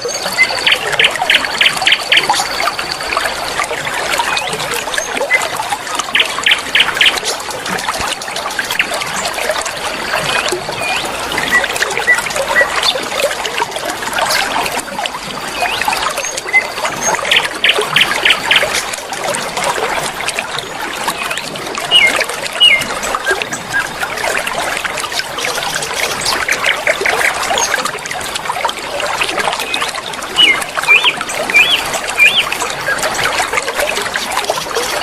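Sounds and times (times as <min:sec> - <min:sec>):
bird calls: 0:00.0 - 0:03.0, 0:06.1 - 0:07.3, 0:21.2 - 0:23.9, 0:29.6 - 0:33.2
river water flowing: 0:00.0 - 0:35.0.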